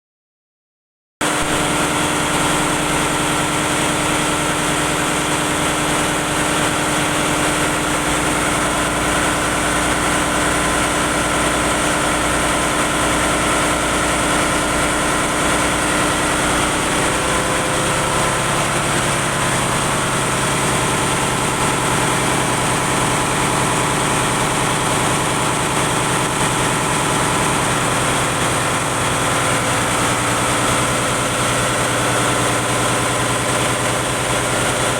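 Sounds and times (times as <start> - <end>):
engine-room machinery drone: 1.2 - 34.9.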